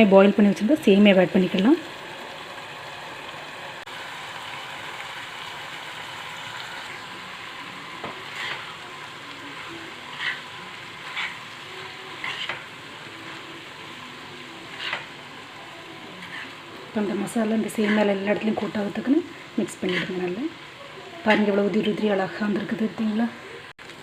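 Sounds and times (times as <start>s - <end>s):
food sizzling in a pan: 0.0s - 24.0s
spatula scraping a pan: 8.0s - 8.8s, 9.5s - 13.4s, 14.6s - 15.2s, 16.0s - 18.8s, 19.6s - 20.4s.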